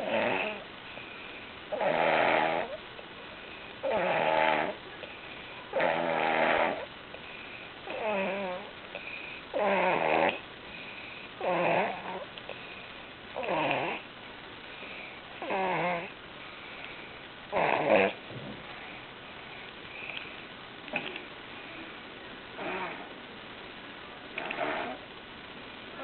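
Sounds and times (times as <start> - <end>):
person snoring: 0.0 - 0.6, 1.7 - 2.8, 3.8 - 4.8, 5.7 - 6.9, 7.9 - 8.7, 9.5 - 10.4, 11.4 - 12.3, 13.4 - 14.0, 15.4 - 16.1, 17.5 - 18.2, 22.6 - 23.1, 24.4 - 25.0.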